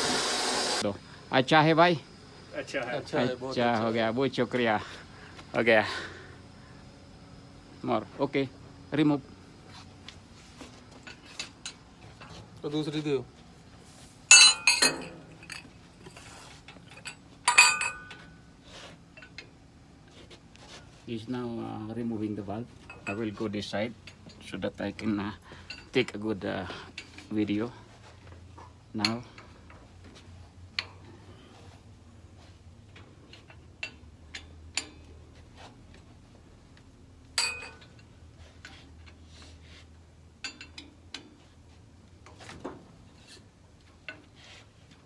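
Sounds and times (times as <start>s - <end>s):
faint steady hum: 0.0s - 45.0s
loud ringing metal clank: 14.3s - 15.2s
ringing metal clank: 14.3s - 15.7s, 17.0s - 18.3s, 37.4s - 37.9s
metal tools clinking: 14.3s - 18.4s, 22.8s - 26.2s, 37.4s - 38.8s
metallic clicks and taps of tools: 40.4s - 41.4s.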